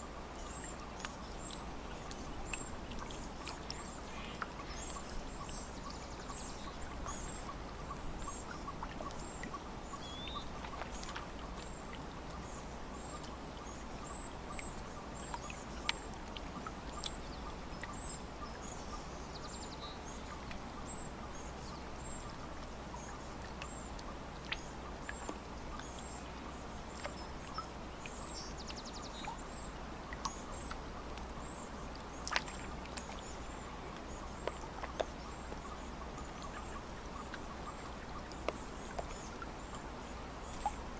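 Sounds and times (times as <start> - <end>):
faint clicks: 0.6 - 5.6, 14.5 - 17.2, 20.4 - 20.6, 34.0 - 35.3.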